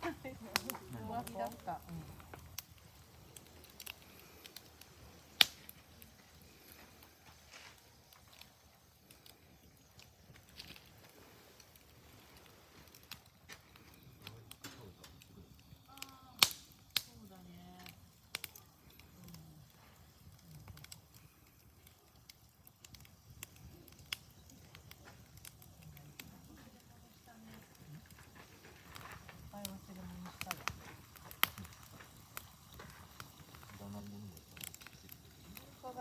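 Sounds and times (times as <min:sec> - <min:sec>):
campfire crackling: 0:00.0 - 0:36.0
wood popping: 0:00.0 - 0:36.0.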